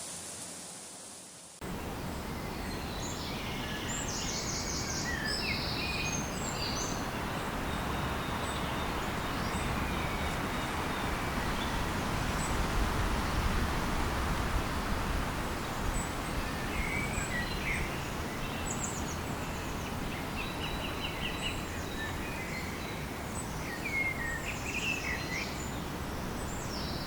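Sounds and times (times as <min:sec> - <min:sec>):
steady rushing hiss: 0:00.0 - 0:05.0.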